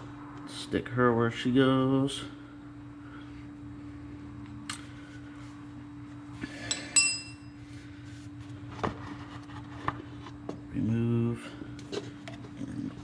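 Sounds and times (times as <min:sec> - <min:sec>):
steady low hum: 0:00.0 - 0:13.0
ringing metallic clink: 0:06.7 - 0:07.5.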